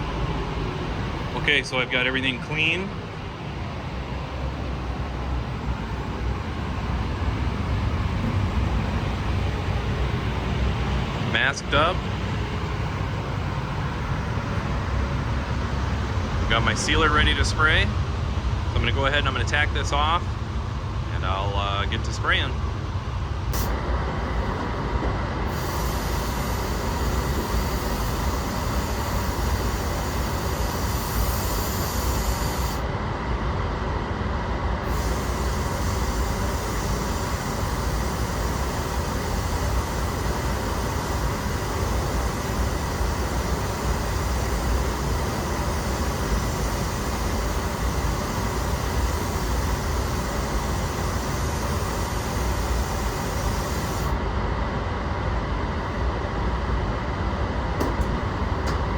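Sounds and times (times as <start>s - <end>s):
booth fans rumbling: 0.0s - 58.9s
spray gun hissing: 25.5s - 32.8s, 34.8s - 54.2s.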